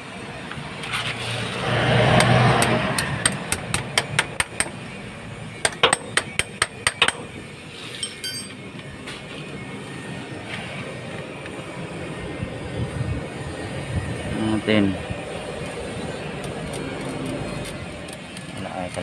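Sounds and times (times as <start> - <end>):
sharp metallic taps: 2.2 - 4.9, 5.6 - 7.4.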